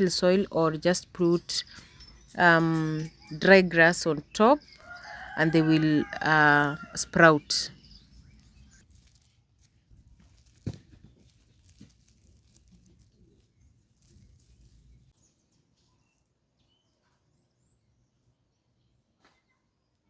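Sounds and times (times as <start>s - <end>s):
faint bird chirps: 1.3s - 9.4s
faint rustling and handling: 8.3s - 15.1s.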